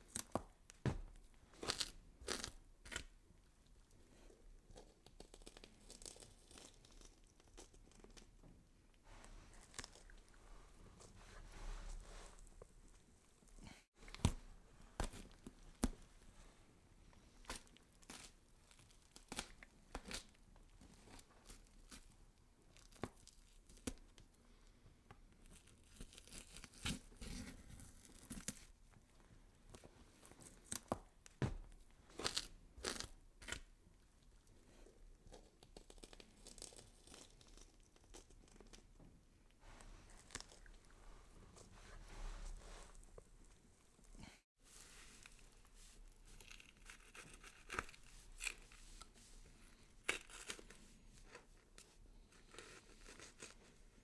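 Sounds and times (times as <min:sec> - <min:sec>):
crunching and tearing: 0:45.2 - 0:49.1, 0:49.7 - 0:51.5.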